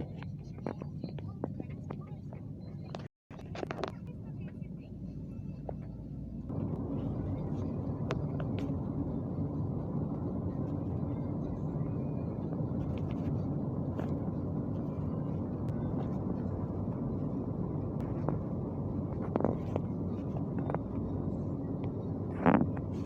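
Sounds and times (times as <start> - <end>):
train rumbling inside carriage: 0.0 - 23.0.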